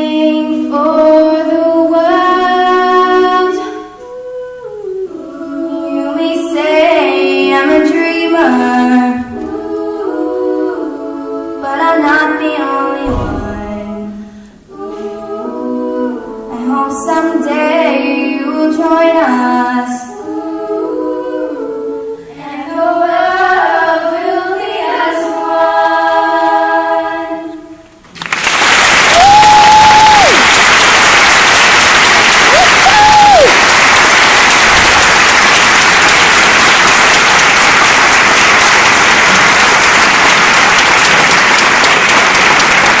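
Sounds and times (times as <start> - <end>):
women singing in harmony: 0.0 - 27.8
audience applause: 28.1 - 43.0.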